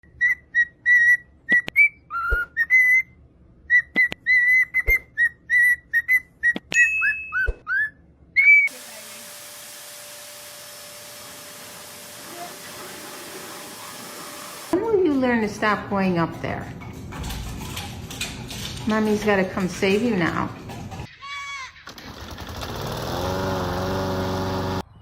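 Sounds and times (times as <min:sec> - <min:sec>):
parrot whistling: 0:00.0 - 0:08.7
steady hiss: 0:08.7 - 0:14.8.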